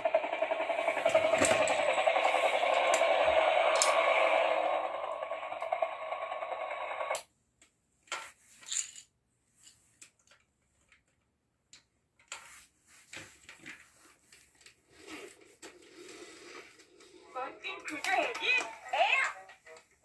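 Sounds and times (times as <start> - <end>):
steady louder sound: 0.0 - 7.2.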